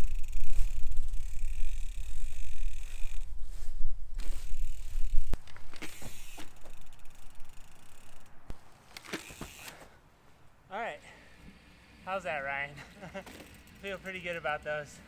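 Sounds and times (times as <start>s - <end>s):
bicycle freewheel ratcheting: 0.0s - 3.3s, 4.2s - 8.4s, 9.0s - 9.8s, 13.2s - 14.4s
bicycle squeaks: 0.0s - 3.3s, 4.2s - 9.8s, 13.2s - 14.3s
wind rumble on microphone: 0.0s - 5.5s.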